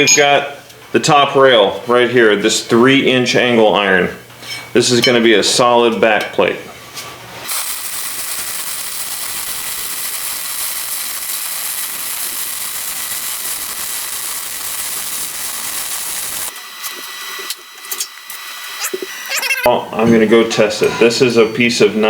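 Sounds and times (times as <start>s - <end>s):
power tool running: 7.5s - 19.7s.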